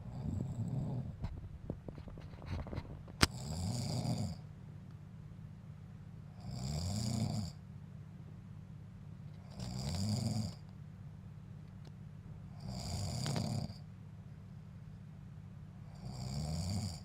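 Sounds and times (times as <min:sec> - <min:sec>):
man snoring: 0:00.0 - 0:01.2, 0:03.2 - 0:04.4, 0:06.4 - 0:07.6, 0:09.4 - 0:10.6, 0:12.5 - 0:13.8, 0:15.8 - 0:17.0
steady low hum: 0:00.0 - 0:17.0.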